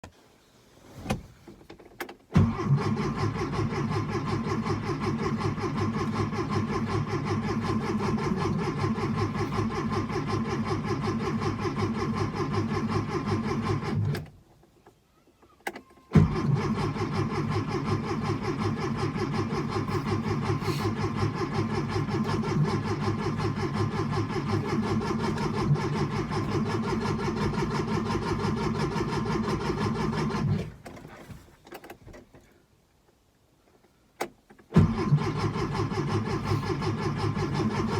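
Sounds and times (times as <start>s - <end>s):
starter motor cranking engine: 2.3s - 14.3s, 15.7s - 30.9s, 34.7s - 37.9s.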